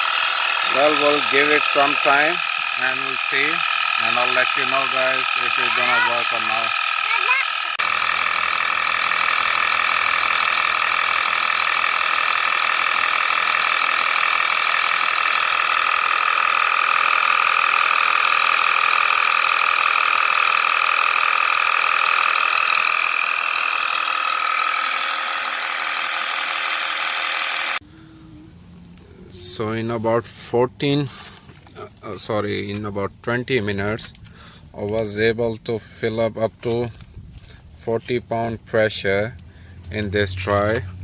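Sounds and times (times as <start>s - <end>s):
tyre inflator compressor buzzing: 0.0s - 27.9s.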